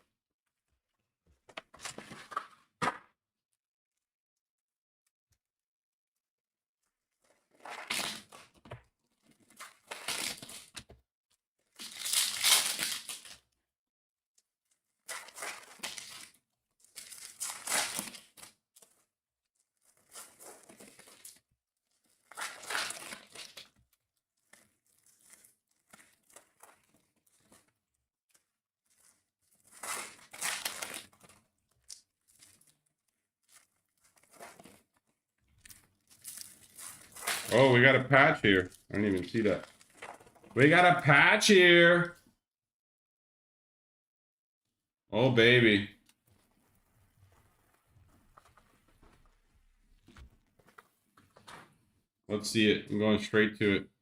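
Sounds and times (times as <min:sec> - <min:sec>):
plastic wrapping tearing and crinkling: 0:07.2 - 0:10.8, 0:11.6 - 0:13.5, 0:14.9 - 0:40.9.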